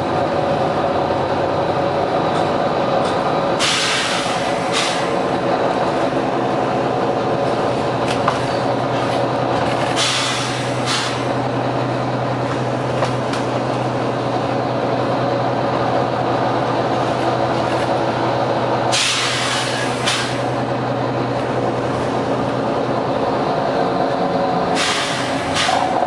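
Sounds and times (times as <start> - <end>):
bus engine running: 0.0 - 26.0
compressed air hiss: 3.6 - 5.1, 10.0 - 11.3, 18.9 - 20.4, 24.8 - 26.0.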